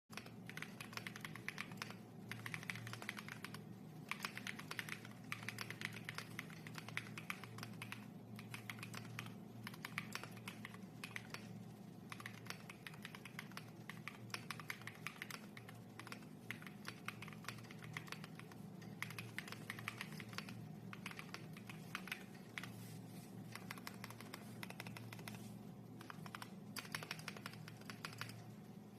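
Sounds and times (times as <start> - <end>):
mechanical keyboard typing: 0.1 - 22.9, 23.5 - 28.6.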